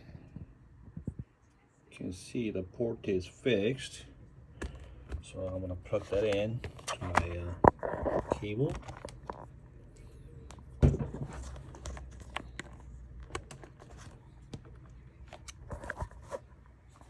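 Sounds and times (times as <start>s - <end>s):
cable clicks and rustling: 4.6s - 17.0s.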